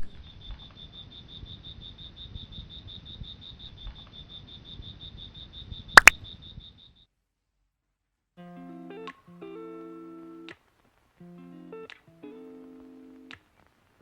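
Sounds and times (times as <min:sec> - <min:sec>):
sharp clicks: 0:06.0 - 0:06.2.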